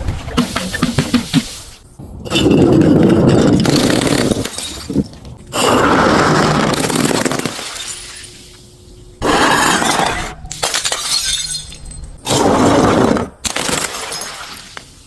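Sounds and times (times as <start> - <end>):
glass bottles smashing: 2.3 - 5.3, 6.8 - 8.4, 9.2 - 12.3, 13.5 - 14.8.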